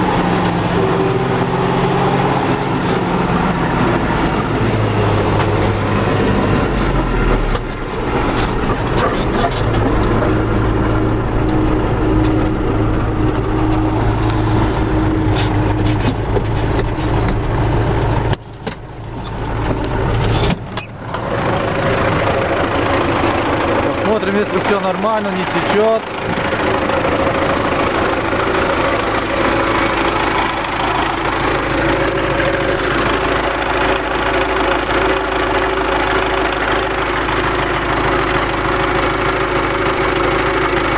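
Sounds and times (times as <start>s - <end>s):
tractor diesel engine running: 0.0s - 40.9s.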